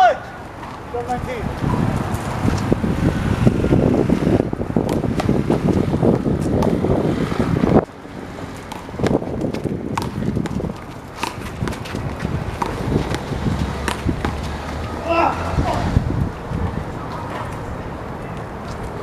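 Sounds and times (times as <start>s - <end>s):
running footsteps: 0.2s - 3.1s, 4.8s - 19.0s
wind buffeting microphone: 0.3s - 19.0s
ball slapping against wall: 8.7s - 14.8s.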